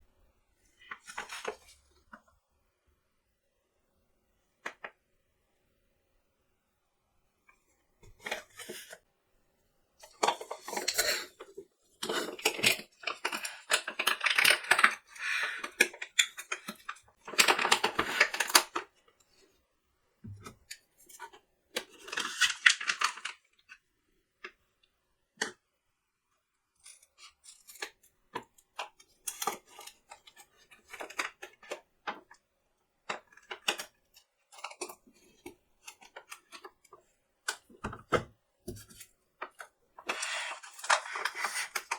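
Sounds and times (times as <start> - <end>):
packaging crinkling and rustling: 12.0 - 18.9, 21.8 - 23.5, 34.6 - 41.9.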